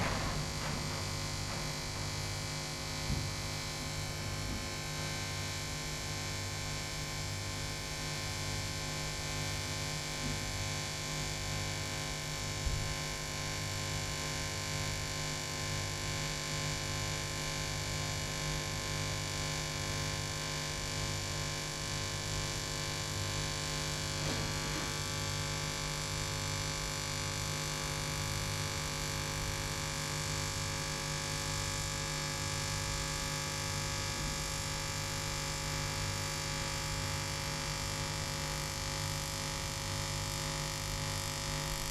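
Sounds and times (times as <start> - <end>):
pulsing welding arc hum: 20.9 - 41.9.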